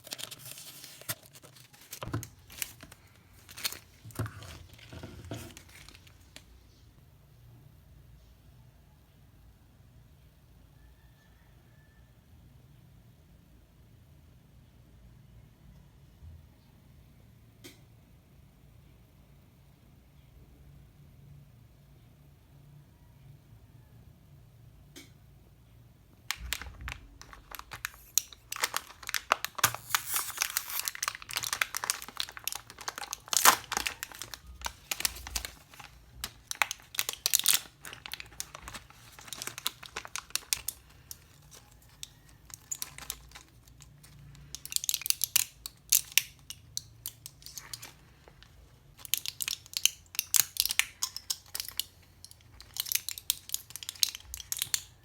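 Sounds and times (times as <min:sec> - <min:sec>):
crinkling and rustling: 0:00.0 - 0:06.5, 0:26.3 - 0:55.0.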